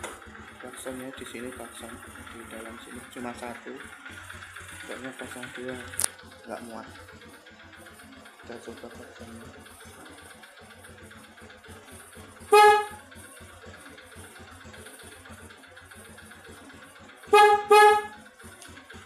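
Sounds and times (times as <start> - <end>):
motorcycle horn blasts: 12.4 - 13.0, 17.2 - 18.2.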